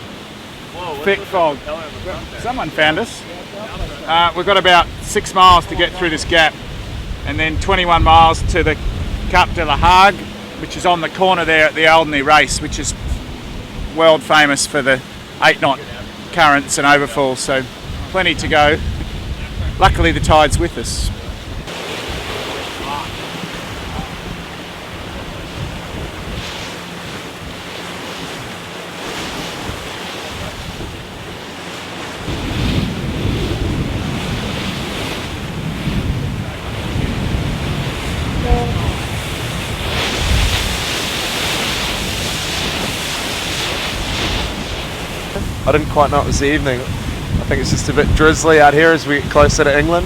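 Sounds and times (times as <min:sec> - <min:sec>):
rushing water and spray: 0:00.0 - 0:50.0
wind buffeting microphone: 0:00.0 - 0:50.0.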